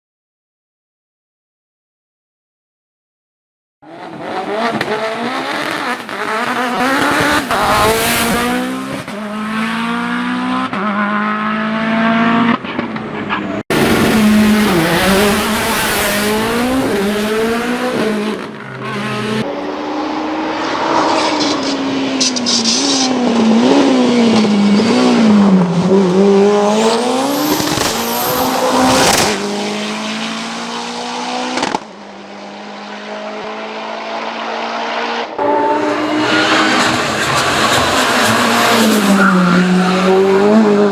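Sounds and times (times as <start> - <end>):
race car engine revving: 3.8 - 40.9
tyre squeal: 20.7 - 23.4.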